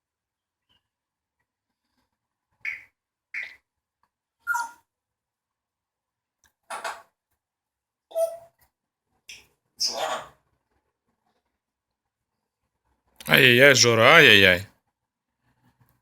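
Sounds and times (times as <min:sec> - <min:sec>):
parrot whistles and squawks: 0:04.4 - 0:04.8, 0:09.8 - 0:10.4.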